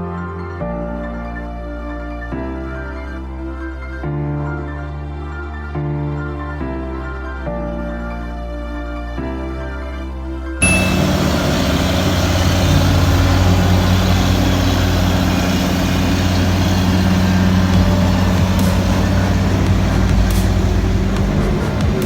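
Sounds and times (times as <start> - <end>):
heavy vehicle engine running: 10.6 - 22.0
street noise: 10.6 - 22.0.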